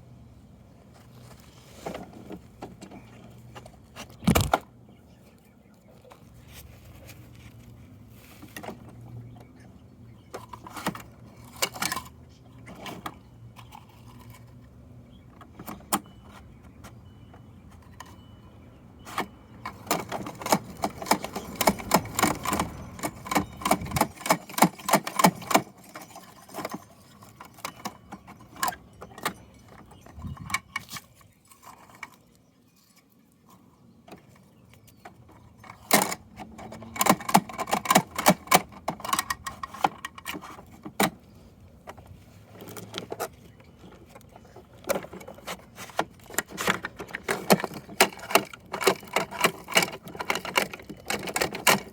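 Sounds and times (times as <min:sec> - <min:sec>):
plastic toy parts clattering: 0:10.3 - 0:14.7, 0:19.1 - 0:33.1, 0:35.0 - 0:41.2, 0:41.8 - 0:51.9.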